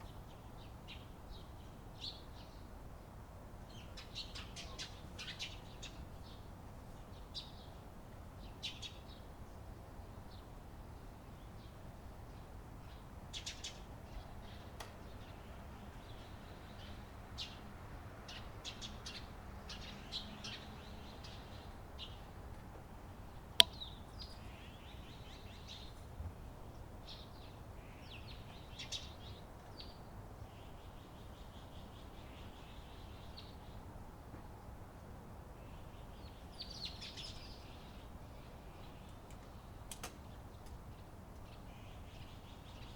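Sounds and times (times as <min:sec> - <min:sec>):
low steady hiss: 0:00.0 - 0:42.9
sparrows chirping: 0:03.7 - 0:07.8, 0:11.4 - 0:17.6, 0:18.2 - 0:22.4, 0:23.2 - 0:33.8, 0:35.6 - 0:42.9.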